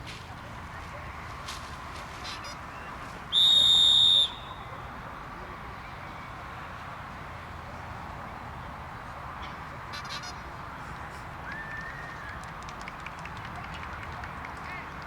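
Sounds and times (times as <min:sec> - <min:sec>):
outdoor background noise: 0:00.0 - 0:15.0
whistle blast: 0:03.3 - 0:04.8.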